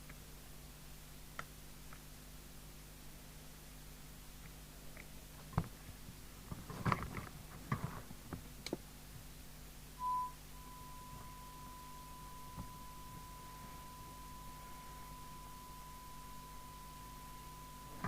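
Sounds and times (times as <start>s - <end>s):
low mains hum: 0.0s - 18.0s
radio beep and held tone: 10.0s - 18.0s.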